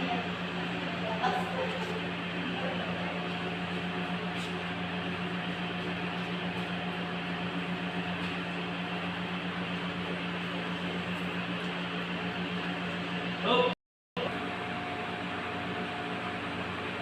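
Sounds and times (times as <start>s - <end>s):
mechanical hum with hiss: 0.0s - 17.0s.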